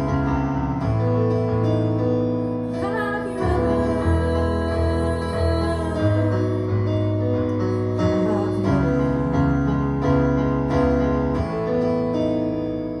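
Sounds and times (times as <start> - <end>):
instrumental music with held chords: 0.0 - 13.0.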